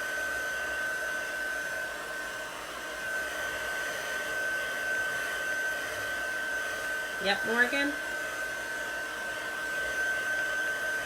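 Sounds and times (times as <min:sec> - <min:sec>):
hair dryer blowing: 0:00.0 - 0:11.0.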